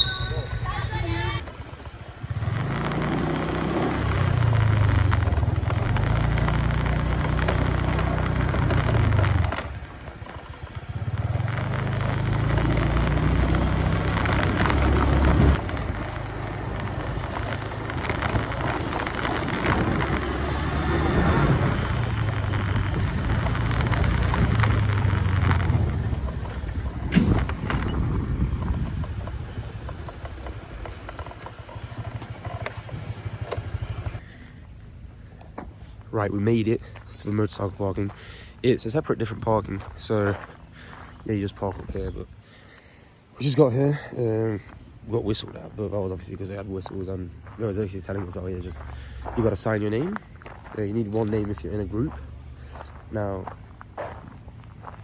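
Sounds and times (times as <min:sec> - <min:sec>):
motorbike engine running: 0:00.0 - 0:39.0, 0:46.6 - 0:55.0
wind noise on microphone: 0:13.8 - 0:30.8.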